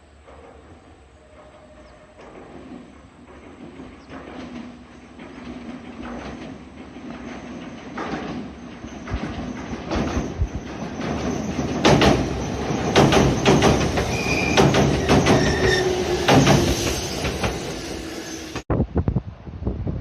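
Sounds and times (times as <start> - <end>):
train wheels clacking over rail joints: 0.0 - 18.7
high-pitched wheel squeals: 10.4 - 18.6.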